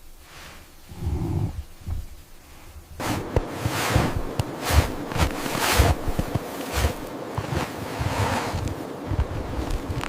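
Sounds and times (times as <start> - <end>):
wind blowing in gusts: 0.9 - 10.0.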